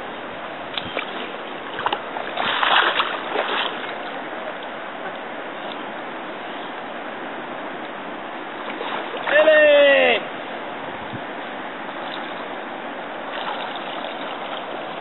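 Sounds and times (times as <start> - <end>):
river water running: 0.0 - 15.0
water splashing: 0.8 - 4.3, 8.6 - 10.3, 11.9 - 12.5, 13.2 - 15.0.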